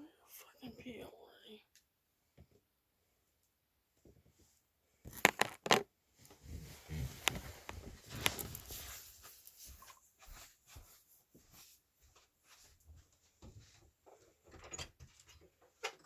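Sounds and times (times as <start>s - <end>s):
rustling and handling noise: 4.0s - 14.5s.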